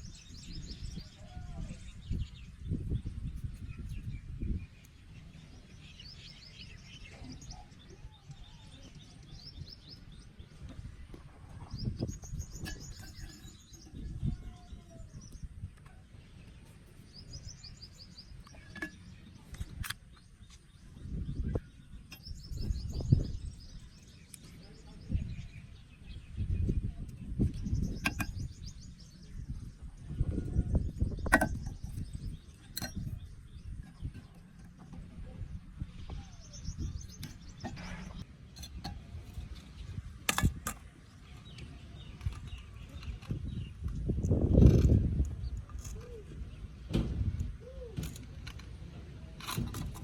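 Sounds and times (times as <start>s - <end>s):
bird singing trilled phrases: 0.0s - 38.3s
handling thumps and clicks: 18.4s - 20.6s, 27.8s - 28.5s, 31.2s - 35.1s.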